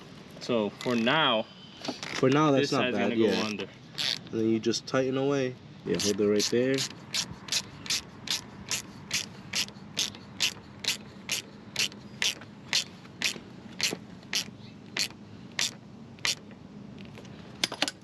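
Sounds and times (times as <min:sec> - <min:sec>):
ratchet wrench clicking: 0:04.0 - 0:04.2, 0:06.0 - 0:16.4.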